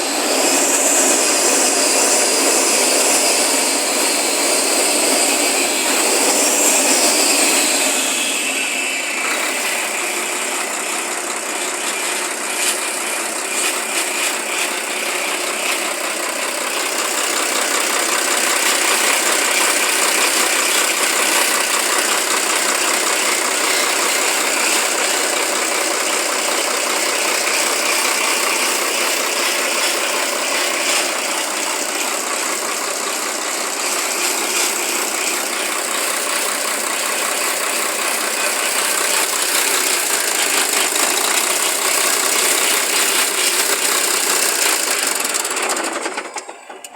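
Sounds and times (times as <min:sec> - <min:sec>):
diesel truck engine running: 0:00.0 - 0:46.9.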